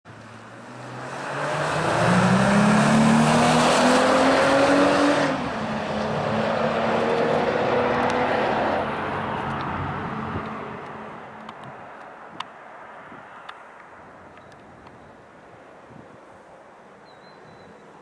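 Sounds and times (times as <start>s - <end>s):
car engine accelerating hard: 0.3s - 11.1s.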